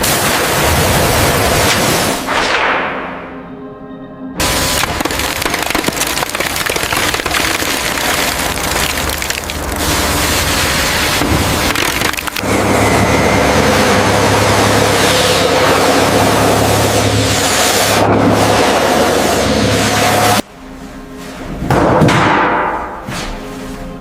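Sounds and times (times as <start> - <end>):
crackling and splintering: 4.4 - 12.5.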